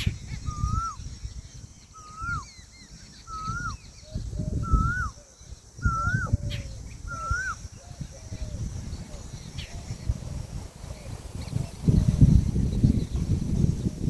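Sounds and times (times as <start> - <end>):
peahen whistled call: 0.0 - 1.3, 1.9 - 8.0.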